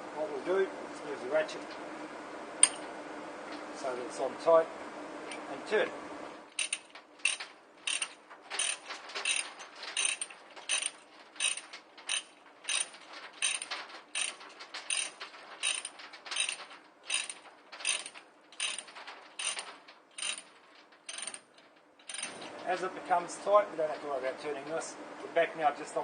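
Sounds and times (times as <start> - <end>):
ratchet binder pawl clicking: 6.5 - 22.4.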